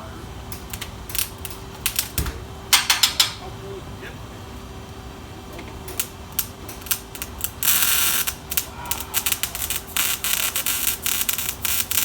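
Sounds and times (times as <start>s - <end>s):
tools clicking on metal exhaust: 0.5s - 3.4s, 5.8s - 12.0s.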